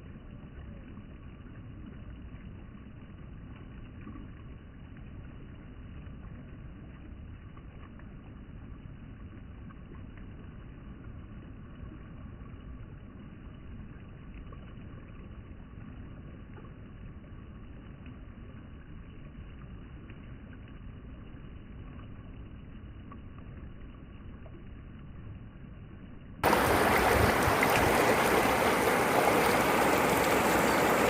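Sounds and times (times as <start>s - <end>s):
floodwater rushing: 26.4s - 31.0s.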